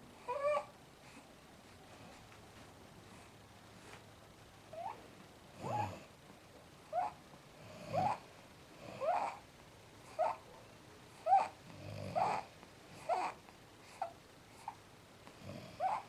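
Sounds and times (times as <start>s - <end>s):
baby snoring squeakily: 5.6s - 6.0s, 7.9s - 8.2s, 8.9s - 9.4s, 11.2s - 13.4s, 15.8s - 16.0s.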